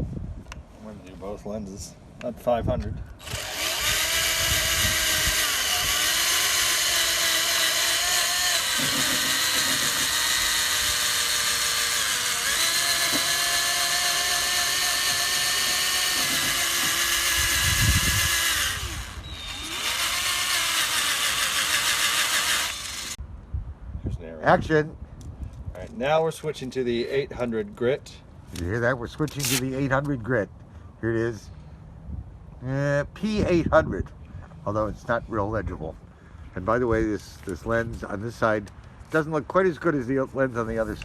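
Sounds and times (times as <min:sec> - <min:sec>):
power drill sanding plastic: 0:03.2 - 0:23.2.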